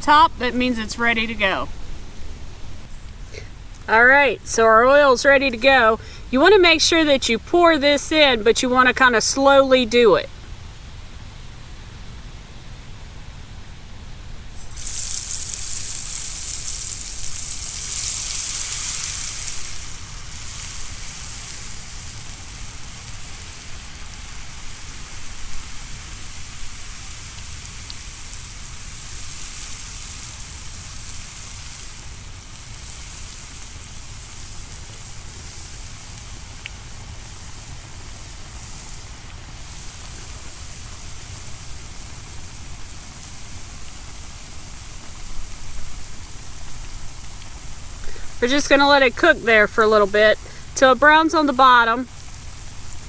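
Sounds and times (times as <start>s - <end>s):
batter sizzling in hot oil: 14.5s - 53.0s.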